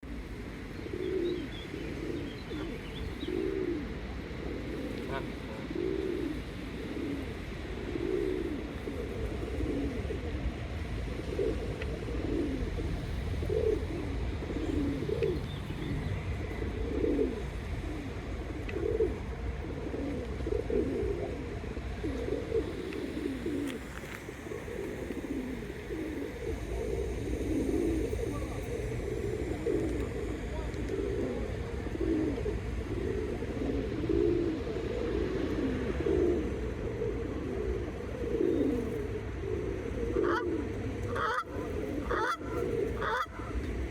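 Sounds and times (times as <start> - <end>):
birds cooing: 0.0 - 43.9
steady low rumble: 0.1 - 43.9.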